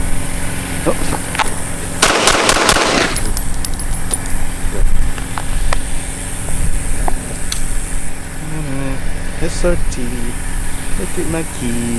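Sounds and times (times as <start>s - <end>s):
steady low rumble: 0.0s - 11.9s
gunshots: 2.0s - 3.3s.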